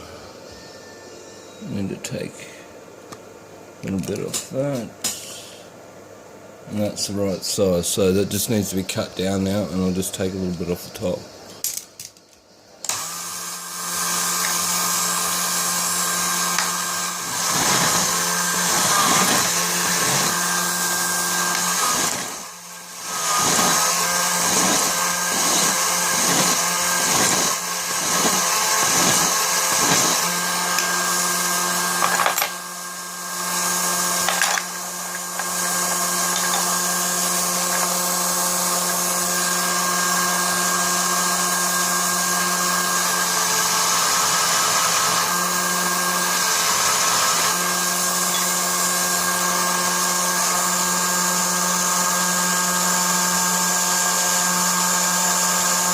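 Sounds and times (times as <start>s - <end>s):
drill motor spinning: 12.8s - 55.9s.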